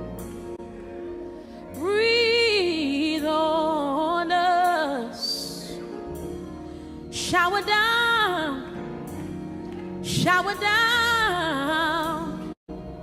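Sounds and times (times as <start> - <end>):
soft accompaniment chords: 0.0 - 13.0
woman singing wordless gospel: 1.7 - 6.0, 7.1 - 8.8, 10.0 - 12.6.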